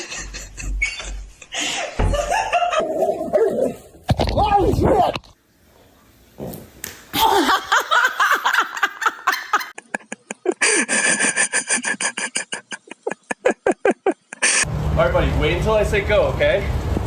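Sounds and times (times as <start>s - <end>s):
person laughing hard: 0.0s - 3.2s, 7.2s - 14.7s.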